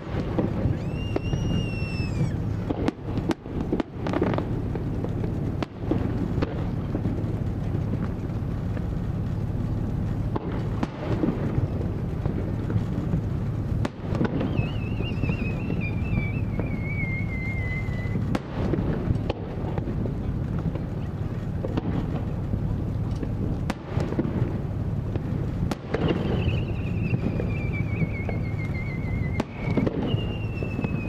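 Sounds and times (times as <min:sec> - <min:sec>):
whistling firework shell: 0:00.0 - 0:04.5, 0:10.4 - 0:19.7, 0:24.6 - 0:31.0
warbling firework whistle: 0:00.0 - 0:05.4, 0:06.0 - 0:22.2, 0:24.4 - 0:31.0
firework bursts and crackle: 0:00.0 - 0:31.0.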